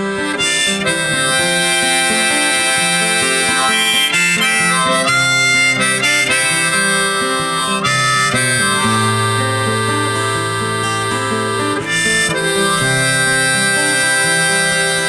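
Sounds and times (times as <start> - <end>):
guitar: 0.0 - 15.0
harmonica playing held notes: 0.0 - 15.0.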